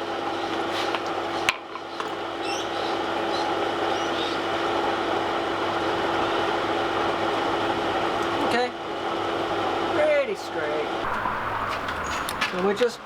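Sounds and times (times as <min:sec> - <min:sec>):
droning mechanical hum: 0:00.0 - 0:13.0
hammer striking steel: 0:11.0 - 0:13.0.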